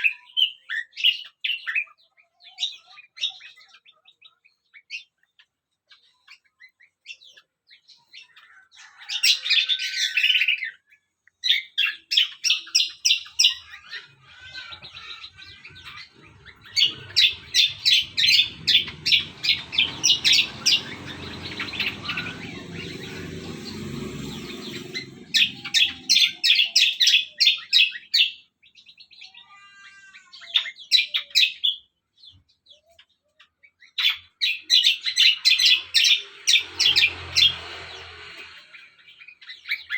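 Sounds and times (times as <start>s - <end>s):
songbird chirping: 0.0s - 39.9s
low rumble: 15.4s - 26.4s.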